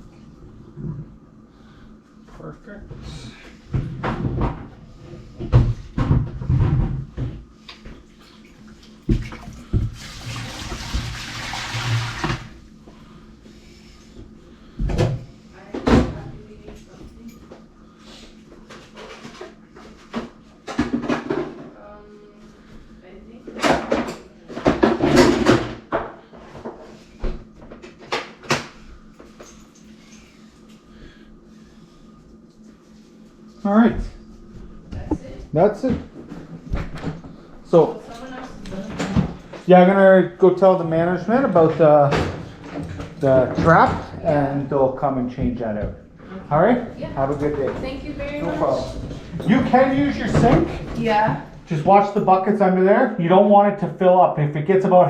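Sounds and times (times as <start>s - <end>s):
knocks and clattering in cabinet: 5.4s - 7.4s, 48.8s - 51.4s
faucet running water into sink: 9.1s - 12.6s.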